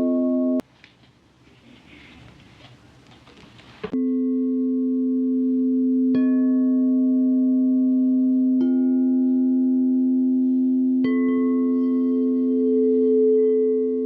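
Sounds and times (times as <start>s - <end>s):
crystal singing bowls ringing: 4.0s - 14.0s.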